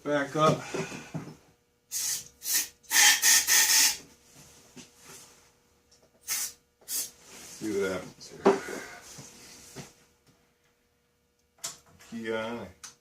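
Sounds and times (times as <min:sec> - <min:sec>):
aerosol spray hissing: 0:06.2 - 0:07.1.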